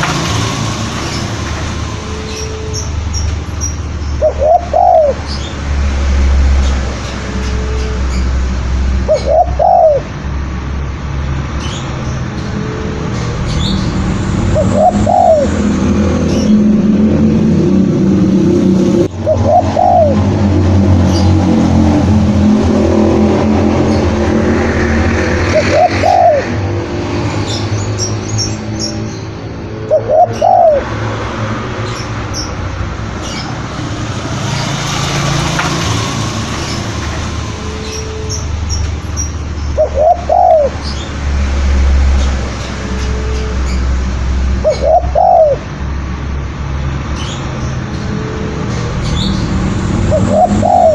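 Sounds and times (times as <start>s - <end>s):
doves cooing: 4.1s - 10.2s, 14.4s - 16.7s, 19.0s - 21.3s, 24.6s - 27.7s, 29.6s - 34.5s, 39.7s - 41.0s, 44.6s - 45.7s, 50.0s - 50.9s.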